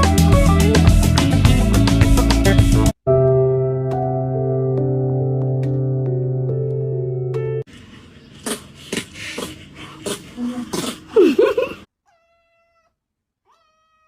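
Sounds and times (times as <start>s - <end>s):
cat meowing: 12.0s - 14.0s.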